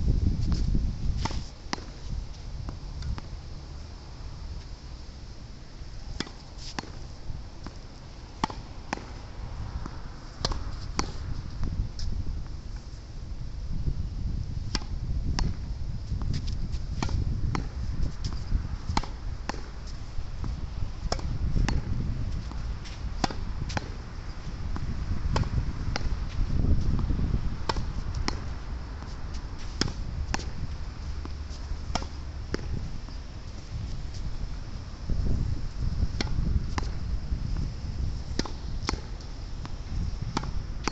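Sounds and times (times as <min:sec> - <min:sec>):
wind rumble on microphone: 0:00.0 - 0:40.9
tennis racket hitting ball: 0:06.1 - 0:07.0, 0:07.6 - 0:11.3, 0:14.7 - 0:20.0, 0:21.0 - 0:24.1, 0:24.7 - 0:32.9, 0:38.4 - 0:40.9.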